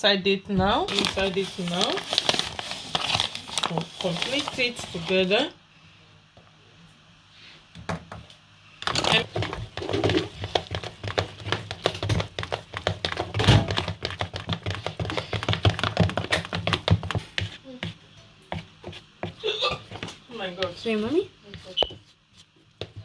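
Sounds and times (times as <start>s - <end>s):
utensil tapping mixing bowl: 9.1s - 22.1s.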